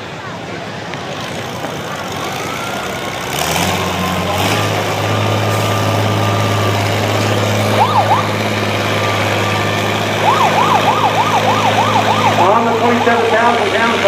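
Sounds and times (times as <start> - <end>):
heavy truck engine running: 0.0 - 14.0
siren sweeps: 7.6 - 8.6, 9.9 - 13.7.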